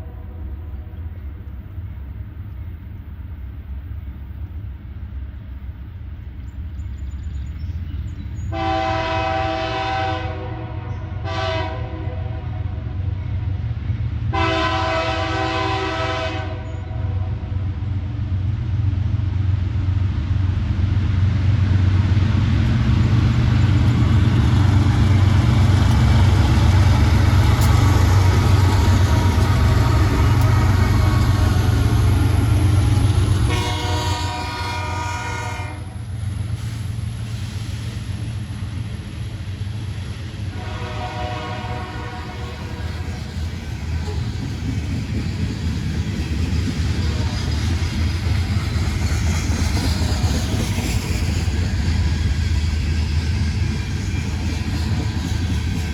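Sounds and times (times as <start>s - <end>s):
diesel locomotive rumbling past: 0.0s - 55.9s
locomotive air horn blasts: 8.5s - 12.8s, 14.3s - 17.3s, 33.4s - 36.0s, 40.5s - 42.9s.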